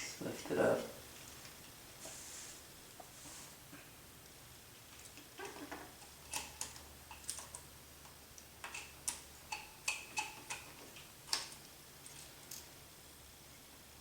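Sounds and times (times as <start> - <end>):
small parts clicking and tapping: 4.9 - 12.7.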